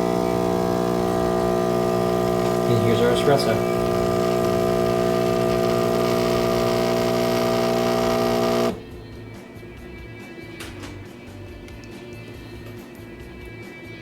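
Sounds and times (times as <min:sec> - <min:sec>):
espresso machine pump humming: 0:00.0 - 0:09.0
faint background music: 0:08.8 - 0:14.0.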